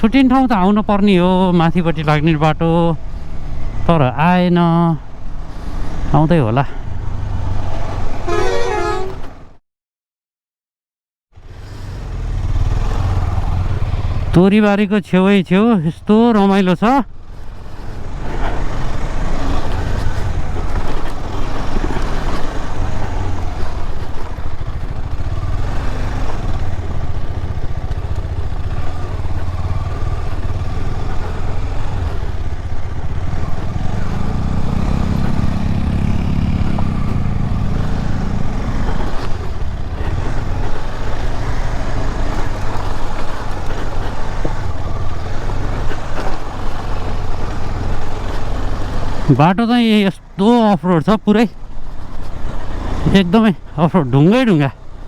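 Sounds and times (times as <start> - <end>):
motorcycle engine running: 11.4 - 14.5, 17.1 - 50.8.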